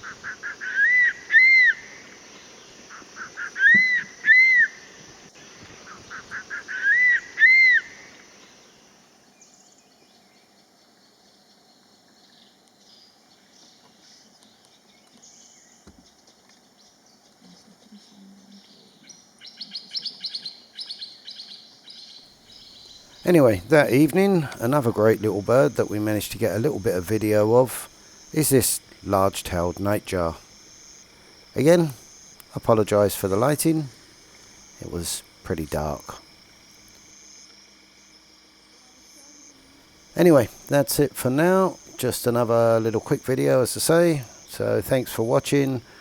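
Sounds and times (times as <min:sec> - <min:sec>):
eagle calling with whistled notes: 0:00.0 - 0:02.1, 0:02.9 - 0:04.9, 0:05.8 - 0:08.1.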